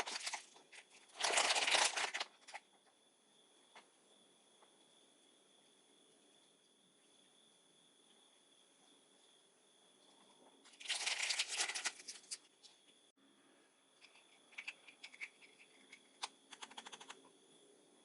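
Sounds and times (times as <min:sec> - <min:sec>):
packaging crinkling and tearing: 0:00.0 - 0:02.6, 0:10.8 - 0:12.4.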